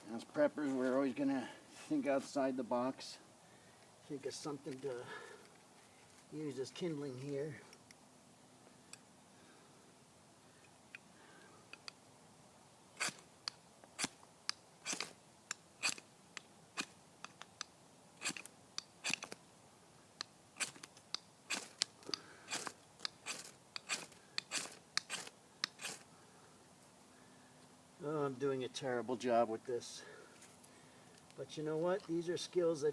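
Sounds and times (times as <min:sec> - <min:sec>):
knife blade scraping and crunching: 0:22.5 - 0:26.0.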